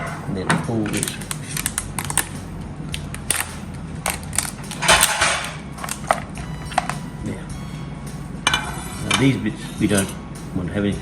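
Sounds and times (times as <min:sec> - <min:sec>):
crab shell cracking: 0:00.9 - 0:07.0
shell crunching tear: 0:01.0 - 0:02.4, 0:03.0 - 0:07.0.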